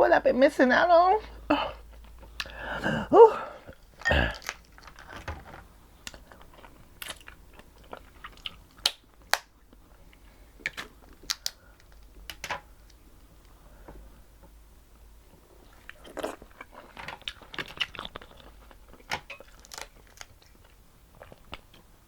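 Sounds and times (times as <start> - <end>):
chewing: 6.0 - 9.0, 15.6 - 21.8
crab shell cracking: 10.7 - 13.0, 16.9 - 20.6.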